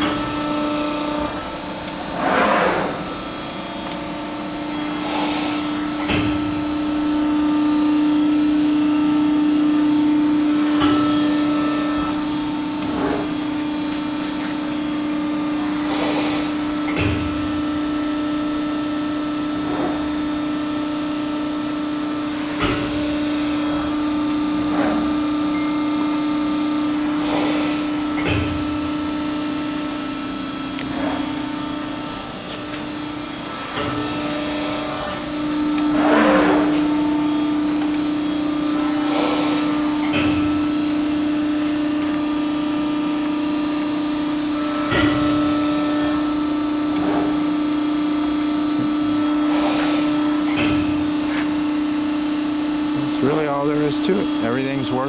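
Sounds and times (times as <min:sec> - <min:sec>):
hydraulic pump humming: 0:00.0 - 0:55.0.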